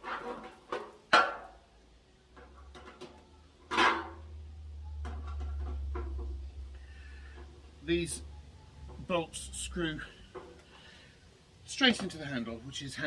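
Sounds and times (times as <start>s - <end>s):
low rumble: 4.2s - 8.8s.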